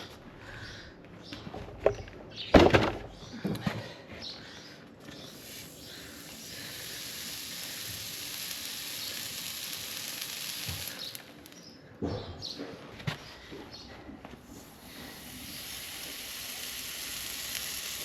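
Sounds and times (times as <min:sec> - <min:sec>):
hot horseshoe sizzling on hoof: 0:05.1 - 0:11.7, 0:14.4 - 0:18.0.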